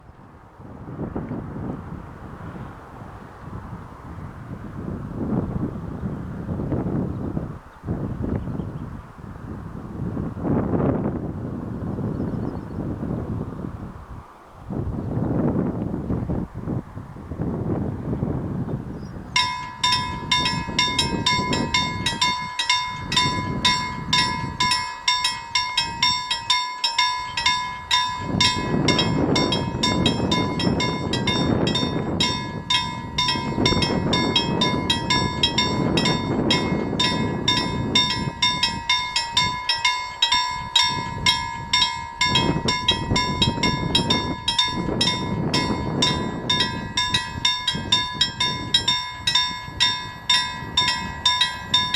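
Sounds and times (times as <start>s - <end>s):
level crossing warning bell: 19.3s - 51.9s
train passing: 19.3s - 51.9s.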